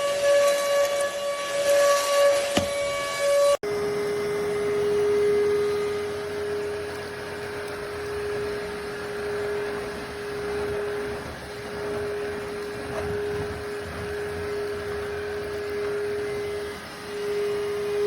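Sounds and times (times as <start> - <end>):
vacuum motor whine: 0.0 - 18.0
rushing air hiss: 3.9 - 18.0.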